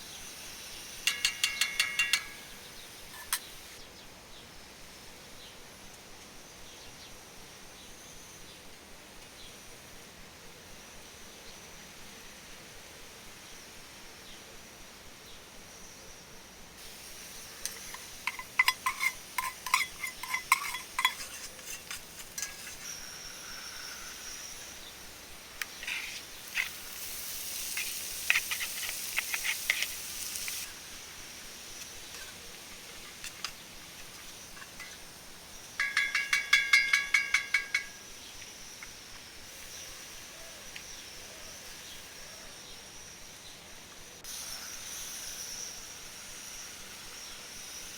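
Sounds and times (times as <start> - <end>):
metal utensil clinking on pot: 1.0 - 3.5, 17.6 - 22.9, 34.6 - 35.0, 35.8 - 38.0.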